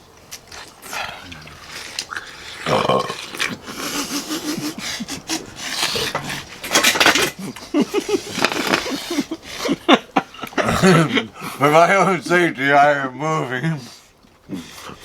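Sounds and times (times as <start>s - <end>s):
short throaty noises: 10.6s - 11.3s.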